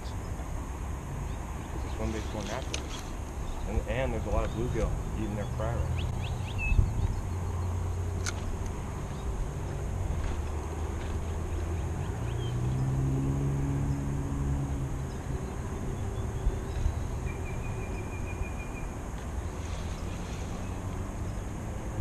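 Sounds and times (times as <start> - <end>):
low outdoor rumble: 0.0 - 22.0
high bird trill: 1.2 - 8.1.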